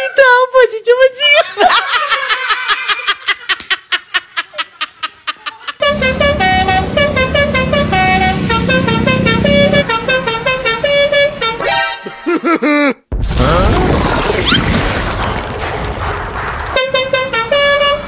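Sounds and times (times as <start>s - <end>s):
bus horn playing a tune: 5.8s - 12.3s, 16.8s - 18.0s
low rumble: 13.2s - 17.3s.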